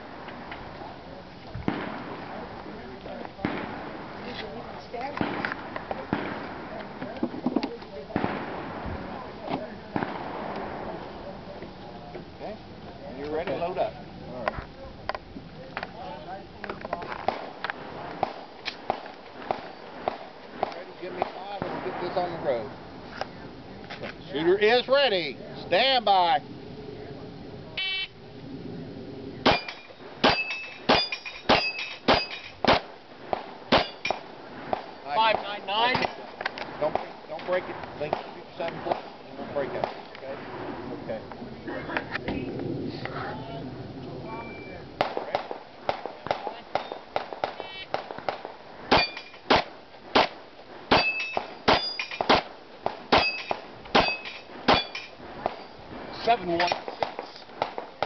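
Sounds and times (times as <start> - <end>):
faint distant gunshots: 1.6 - 11.3, 17.0 - 22.7, 29.4 - 41.2, 45.0 - 58.0
pistol shots: 1.7 - 2.5, 3.4 - 4.4, 5.0 - 6.8, 8.1 - 9.2, 17.1 - 22.6, 29.4 - 37.1, 45.0 - 55.7, 56.4 - 58.0
steel target plate ringing: 29.5 - 32.6, 48.9 - 49.4, 50.9 - 52.3, 53.1 - 55.8.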